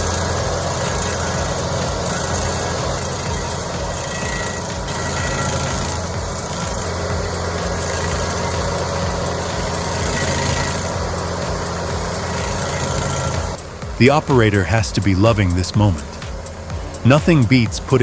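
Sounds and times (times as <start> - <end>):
engine running steadily: 0.0 - 18.0.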